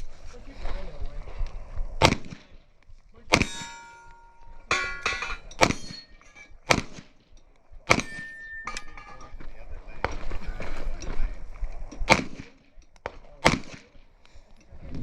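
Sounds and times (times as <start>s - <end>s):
pistol shots: 2.0s - 2.5s, 3.3s - 3.9s, 5.6s - 6.1s, 6.7s - 7.2s, 7.9s - 8.4s, 12.1s - 14.0s
metallic ring of steel targets: 3.3s - 6.7s, 7.3s - 9.5s.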